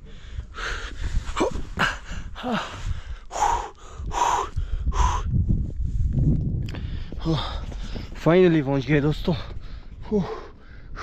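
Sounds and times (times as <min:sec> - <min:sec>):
person panting hard: 0:00.0 - 0:05.4.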